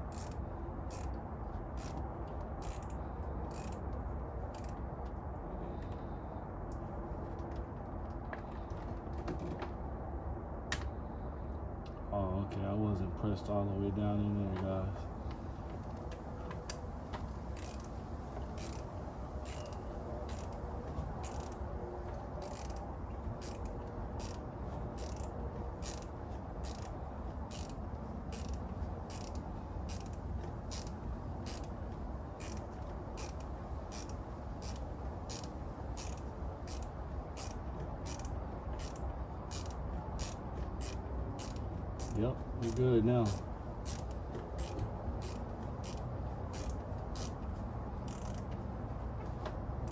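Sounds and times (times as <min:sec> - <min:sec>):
ratchet wrench clicking: 0:00.0 - 0:03.9, 0:04.5 - 0:04.8, 0:17.6 - 0:18.0, 0:18.6 - 0:21.6, 0:22.4 - 0:31.7, 0:32.4 - 0:47.4, 0:48.0 - 0:48.5.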